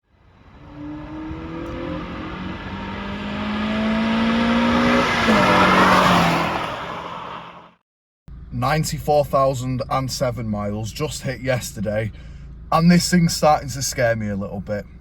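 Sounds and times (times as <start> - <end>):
car engine accelerating: 0.1 - 8.6.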